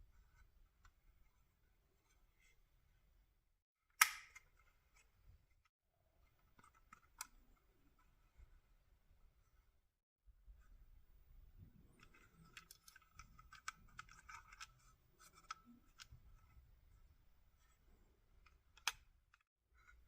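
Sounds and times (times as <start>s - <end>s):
toy packaging clicks and scratches: 12.0s - 16.2s.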